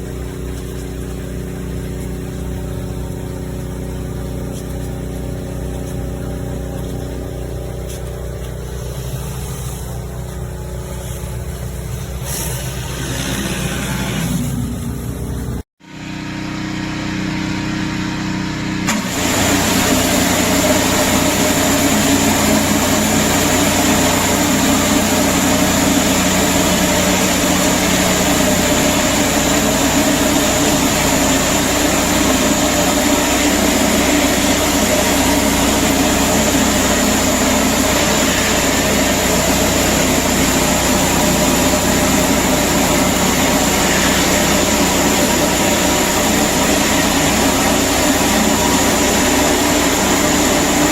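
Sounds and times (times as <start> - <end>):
pressure washer running: 0.0 - 50.9
hiss of high-pressure water spray: 10.8 - 14.6.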